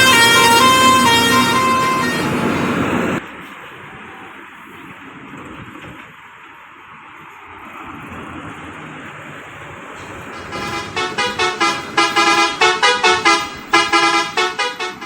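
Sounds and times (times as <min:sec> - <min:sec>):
bus horn playing melody: 0:00.0 - 0:03.2, 0:10.0 - 0:15.0
traffic noise: 0:00.0 - 0:15.0.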